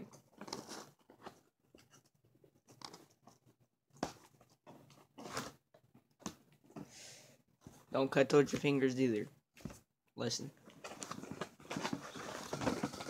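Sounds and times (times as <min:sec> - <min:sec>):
cardboard crackling and tearing: 0:00.3 - 0:01.4, 0:10.8 - 0:13.0.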